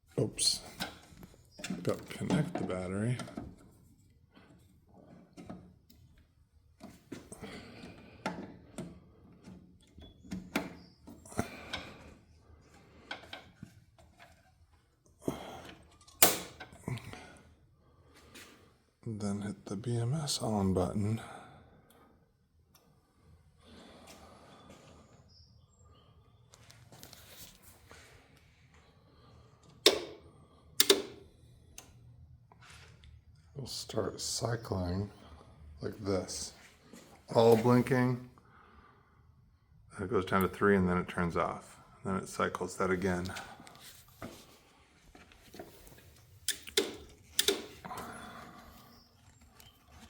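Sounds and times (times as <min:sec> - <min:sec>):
battery cables clicking and knocking: 0:29.7 - 0:31.3, 0:45.2 - 0:48.1.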